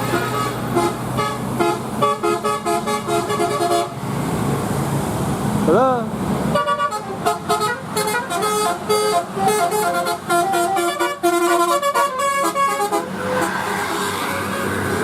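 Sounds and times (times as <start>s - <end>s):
multi-tone air horn tune: 0.0s - 4.0s, 6.5s - 14.9s
steady rushing noise: 12.8s - 15.0s.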